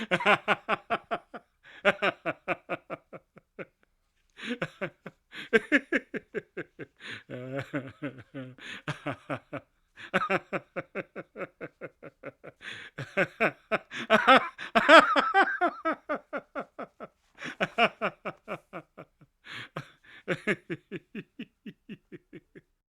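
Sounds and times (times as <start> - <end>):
man laughing: 0.0 - 3.8, 4.4 - 22.8
drawn-in breaths: 12.6 - 13.0.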